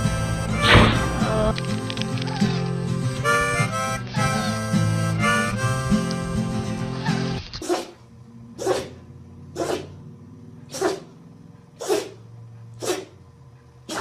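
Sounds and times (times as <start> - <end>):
dog sneezing: 7.0 - 8.0, 8.6 - 9.0, 9.6 - 10.0, 10.7 - 11.1, 11.8 - 12.2, 12.8 - 13.2.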